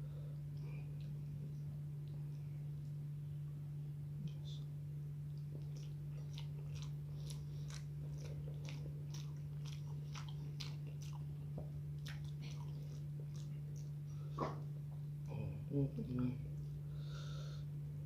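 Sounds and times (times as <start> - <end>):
low hum: 0.0 - 18.0
person chewing food: 5.2 - 15.4.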